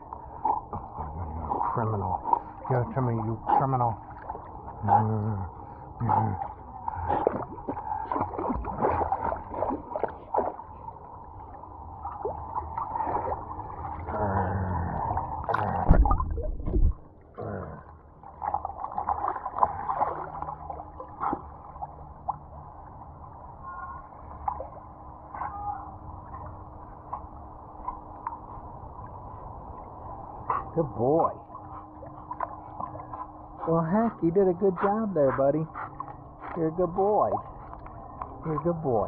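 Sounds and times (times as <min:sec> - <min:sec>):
muffled water sloshing underwater: 0:00.0 - 0:39.0
knocks and splashes: 0:07.1 - 0:10.7, 0:15.5 - 0:17.2, 0:18.4 - 0:22.4.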